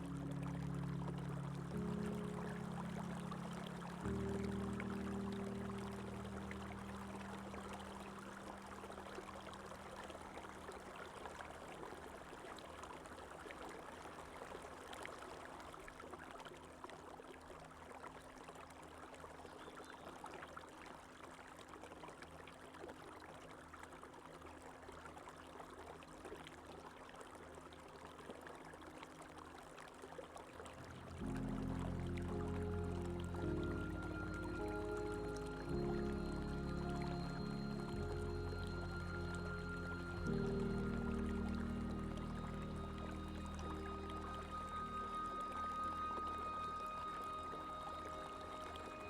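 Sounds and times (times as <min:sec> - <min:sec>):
soft background music: 0:00.0 - 0:12.0, 0:30.7 - 0:49.0
stream flowing and trickling: 0:00.0 - 0:49.0.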